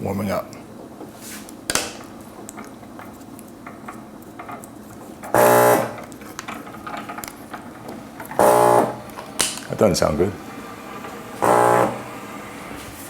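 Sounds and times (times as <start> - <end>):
water pump harsh buzz: 5.3 - 6.1, 8.3 - 9.2, 10.2 - 12.8.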